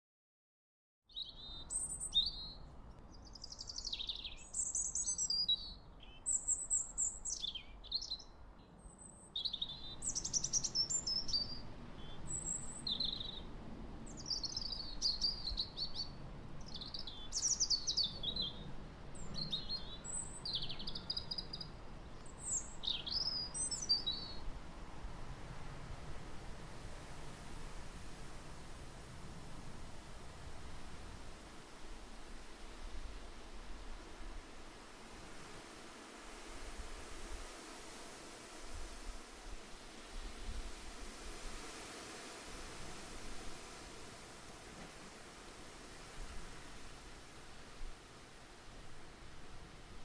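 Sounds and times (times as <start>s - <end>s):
steady wind: 1.1s - 50.0s
bird whistling and chirping: 3.3s - 8.3s, 9.0s - 13.4s, 16.7s - 18.6s, 22.4s - 24.4s.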